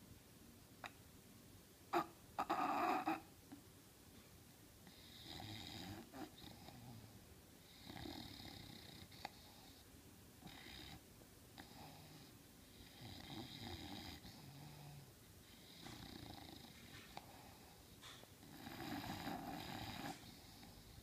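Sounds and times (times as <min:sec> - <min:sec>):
dog snoring: 0:01.9 - 0:03.3, 0:04.8 - 0:09.8, 0:10.4 - 0:11.0, 0:11.6 - 0:17.8, 0:18.4 - 0:21.0.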